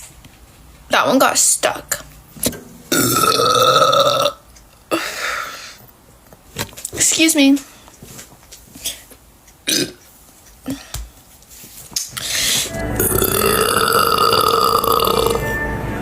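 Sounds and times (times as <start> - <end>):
woman burping: 2.9 - 5.5, 9.6 - 10.0, 13.0 - 15.4.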